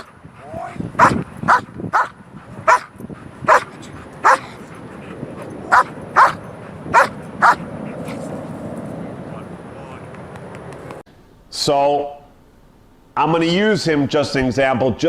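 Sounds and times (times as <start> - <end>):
dog barking: 1.0 - 2.9, 3.5 - 4.6, 5.7 - 8.2.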